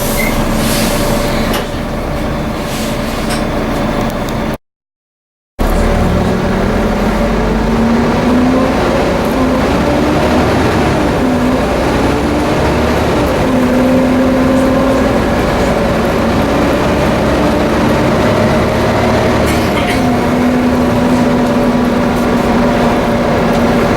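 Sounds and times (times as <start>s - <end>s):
bus engine rumble: 0.0s - 4.6s, 5.6s - 23.9s
bus engine whining: 0.0s - 4.6s, 5.6s - 23.9s.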